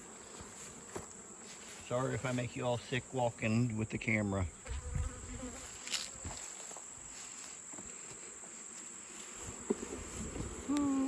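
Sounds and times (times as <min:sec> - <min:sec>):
high insect trill: 0:00.0 - 0:11.0
honeybees buzzing: 0:00.0 - 0:11.0
bee flying past microphone: 0:04.6 - 0:06.3.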